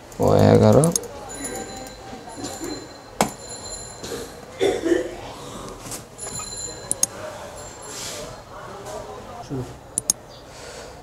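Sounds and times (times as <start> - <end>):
computer mouse clicks: 0.1 - 1.1, 10.0 - 10.2.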